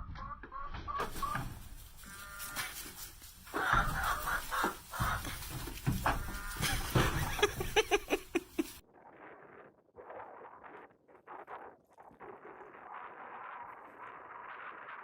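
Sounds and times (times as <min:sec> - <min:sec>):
chicken calls: 0:00.0 - 0:08.8
goat calls: 0:01.0 - 0:08.8
knocks: 0:01.0 - 0:08.8.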